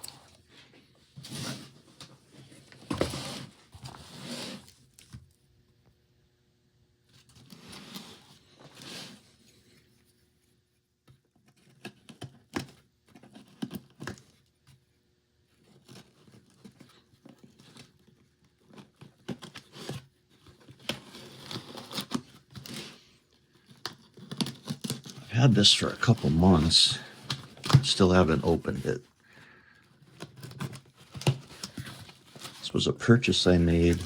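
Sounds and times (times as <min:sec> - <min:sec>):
cardboard packaging rustling: 0:15.5 - 0:34.0.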